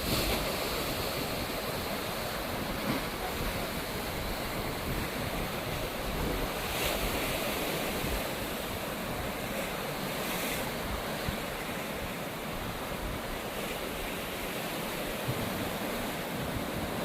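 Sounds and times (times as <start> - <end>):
wind rumbling on microphone: 0.0 - 12.0
sea waves washing ashore: 0.0 - 17.0.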